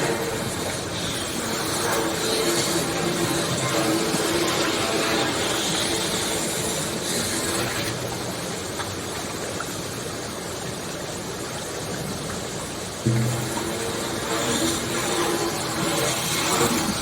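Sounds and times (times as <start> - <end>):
steady rushing noise: 13.0 - 17.0.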